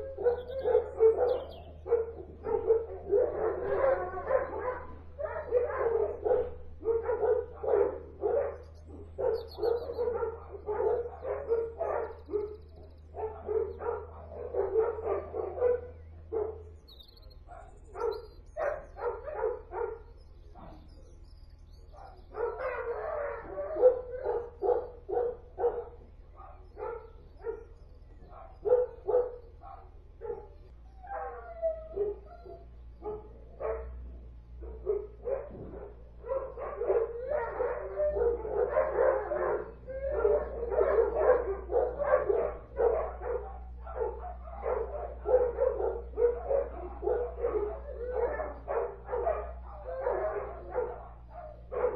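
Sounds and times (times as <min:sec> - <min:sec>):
dogs barking: 0:00.0 - 0:51.9.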